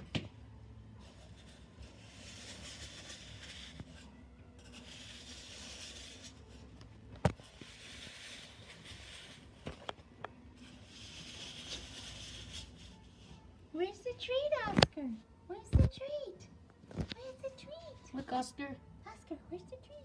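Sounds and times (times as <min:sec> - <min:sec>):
cups scraping across tabletop: 0:01.0 - 0:13.5.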